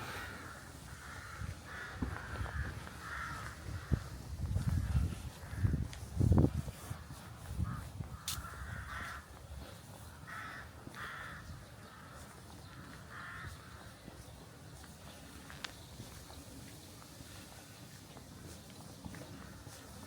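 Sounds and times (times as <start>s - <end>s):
crow cawing: 0.0s - 4.1s, 7.6s - 9.3s, 10.2s - 13.9s.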